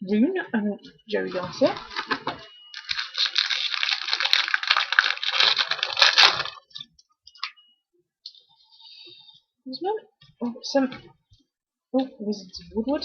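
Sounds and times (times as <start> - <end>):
wrapper crinkling and tearing: 1.3 - 6.8.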